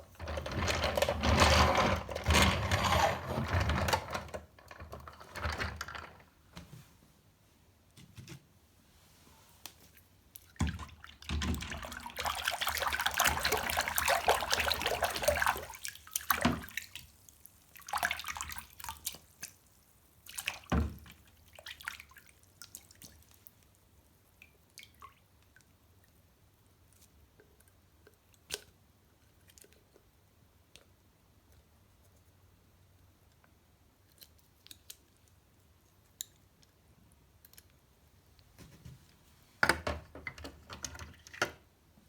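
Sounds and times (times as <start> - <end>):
water splashes: 10.5 - 17.1
tap water running: 10.7 - 16.9.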